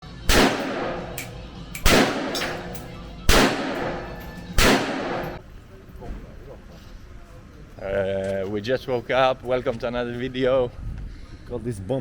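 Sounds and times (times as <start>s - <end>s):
gunshots echoing: 0.2s - 5.4s.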